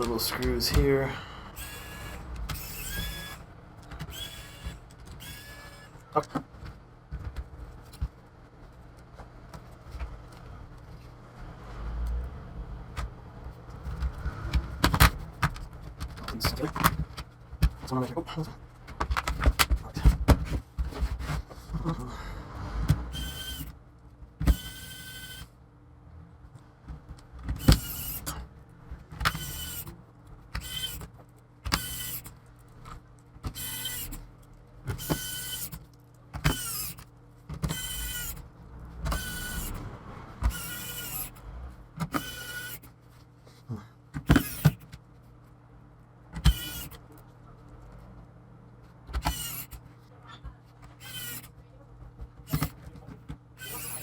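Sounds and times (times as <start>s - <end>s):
electric screwdriver whining: 1.5s - 6.0s, 23.1s - 23.8s, 24.4s - 25.5s, 27.6s - 28.4s, 29.2s - 29.9s, 30.6s - 31.1s, 31.7s - 32.3s, 33.5s - 34.2s, 34.9s - 35.8s, 36.4s - 38.4s, 39.1s - 39.8s, 40.4s - 41.4s, 42.0s - 42.9s, 44.3s - 44.9s, 46.4s - 47.0s, 49.2s - 49.8s, 51.0s - 51.5s, 52.5s - 52.8s, 53.6s - 54.0s.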